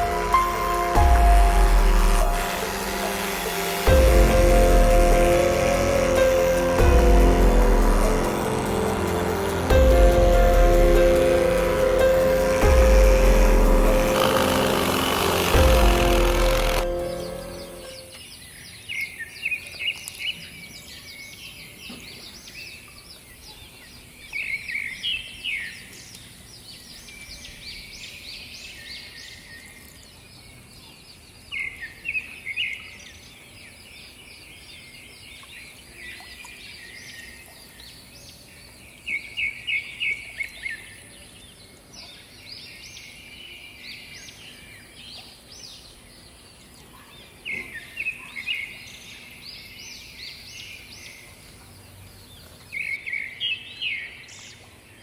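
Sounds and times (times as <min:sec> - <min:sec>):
birds chirping: 0:00.0 - 0:20.6.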